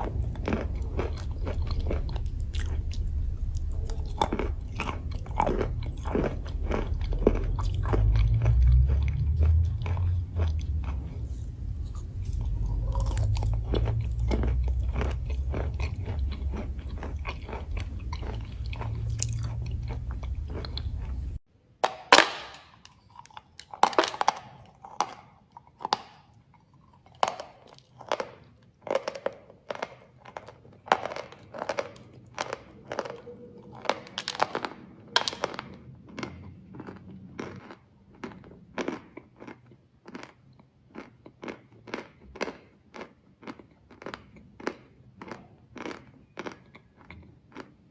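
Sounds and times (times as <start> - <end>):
chalk crunching: 0.0 - 21.4
low rumble: 0.0 - 21.4.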